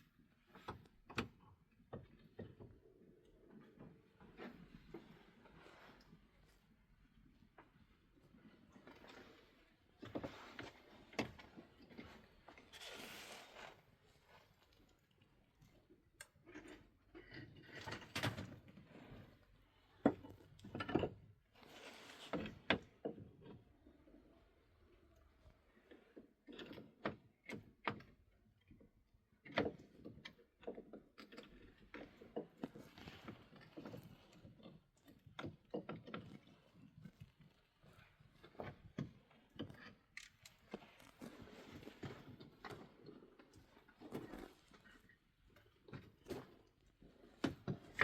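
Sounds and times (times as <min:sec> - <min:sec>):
objects being handled: 0:39.6 - 0:45.0.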